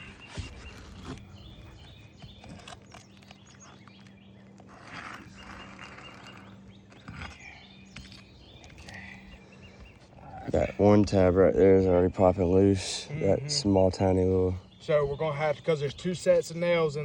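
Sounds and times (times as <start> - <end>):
steady low hum: 0.0 - 17.0
metal pry tool scraping shingles: 0.1 - 9.0.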